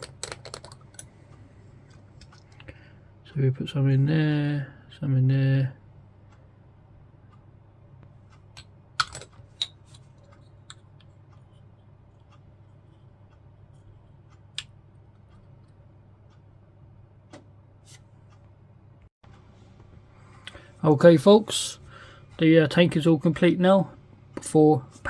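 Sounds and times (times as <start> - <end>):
plastic parts clicking: 0.0 - 1.1, 8.6 - 10.9.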